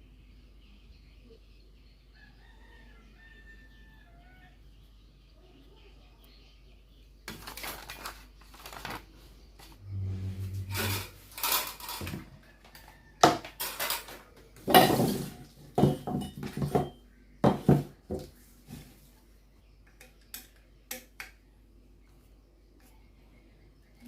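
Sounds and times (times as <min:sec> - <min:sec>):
plastic and metal parts clattering: 0:07.3 - 0:09.8, 0:10.7 - 0:18.3.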